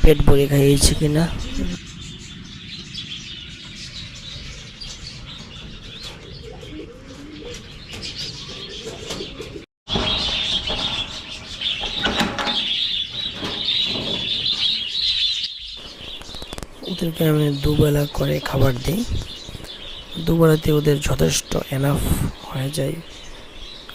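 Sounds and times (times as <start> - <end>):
budgerigars chirping: 0.2 - 23.9
pigeons cooing: 0.8 - 1.8, 2.5 - 20.4.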